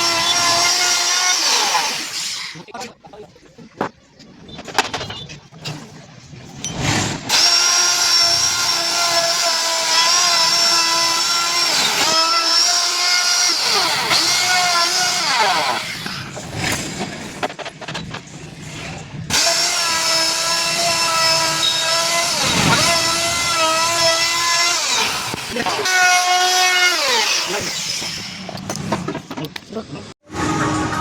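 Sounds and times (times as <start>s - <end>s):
electric carving tool whining: 0.0s - 2.6s, 7.3s - 16.3s, 19.3s - 28.7s.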